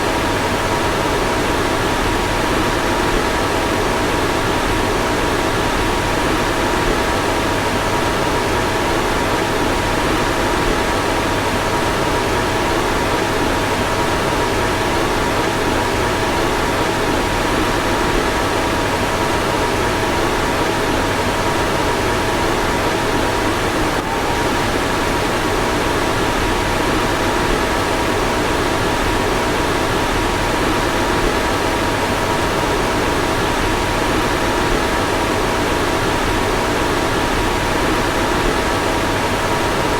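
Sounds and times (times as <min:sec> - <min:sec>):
car fan blowing: 0:20.5 - 0:29.4.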